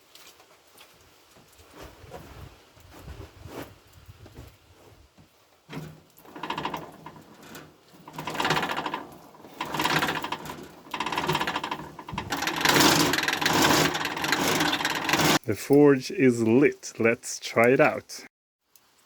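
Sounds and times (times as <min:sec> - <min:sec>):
forge blower whirring: 0:05.7 - 0:15.4.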